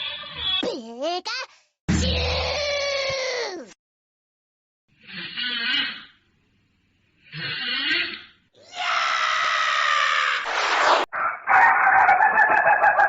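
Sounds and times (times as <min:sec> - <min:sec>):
cartoon snore sound effects: 0:05.0 - 0:06.2, 0:07.2 - 0:08.3.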